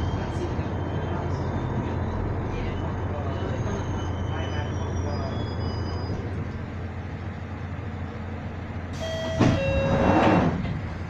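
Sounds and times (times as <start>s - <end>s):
underground train rumbling: 0.0s - 11.0s
train brakes squealing: 2.8s - 6.5s, 9.0s - 10.6s.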